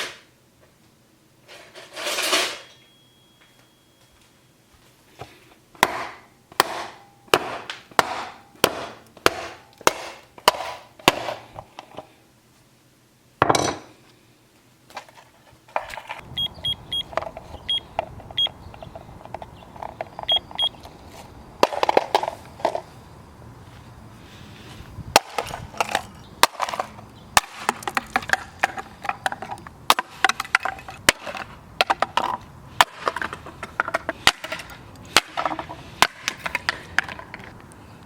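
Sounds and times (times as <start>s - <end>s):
steady low hum: 2.8s - 38.0s
short high beeps: 16.2s - 18.5s.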